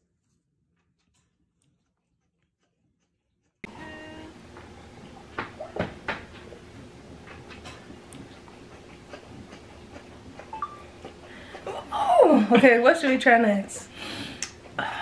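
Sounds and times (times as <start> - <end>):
faint hum: 3.6 - 15.0.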